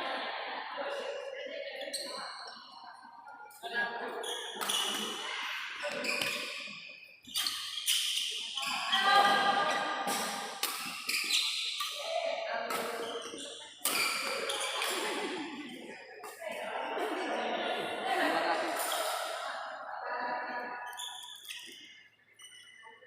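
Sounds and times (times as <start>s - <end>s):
rackets hitting shuttlecock: 10.0s - 12.0s, 12.6s - 15.4s.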